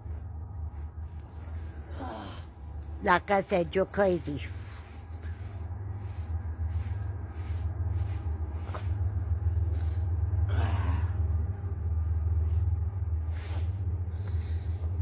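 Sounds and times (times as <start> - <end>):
steady low rumble: 0.0 - 15.0
brushing and crunching in snow: 3.2 - 10.1.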